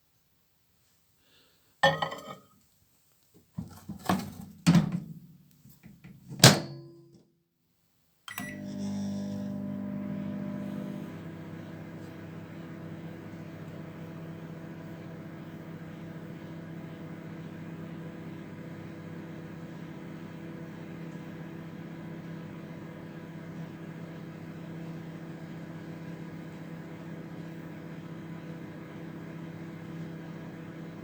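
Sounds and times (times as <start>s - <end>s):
microwave oven clicks and knocks: 5.9s - 7.1s
microwave oven humming: 8.3s - 31.0s.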